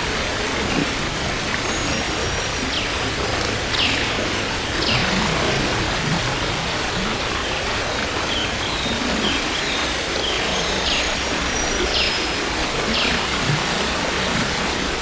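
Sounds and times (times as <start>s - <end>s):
rain hiss: 0.0s - 15.0s.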